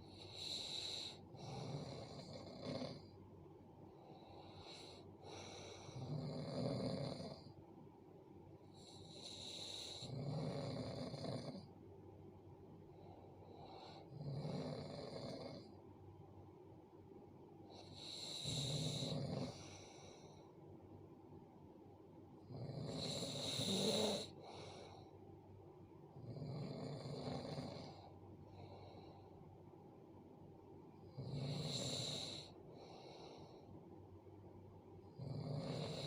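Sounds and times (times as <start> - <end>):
person snoring: 0.1 - 3.1, 4.1 - 7.6, 8.8 - 11.7, 13.4 - 15.7, 17.8 - 20.2, 22.5 - 25.0, 26.2 - 29.0, 31.1 - 32.6, 35.2 - 36.0.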